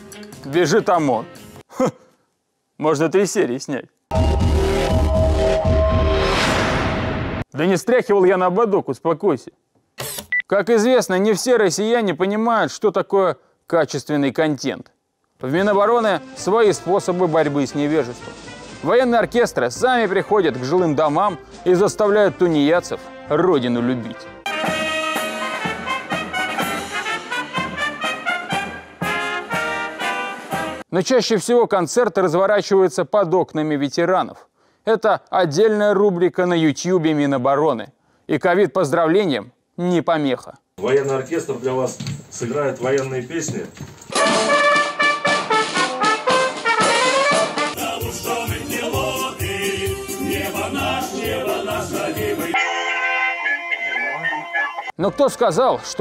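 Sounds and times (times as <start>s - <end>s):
military brass band playing: 24.5s - 30.8s, 44.1s - 47.8s
singing: 47.8s - 52.7s.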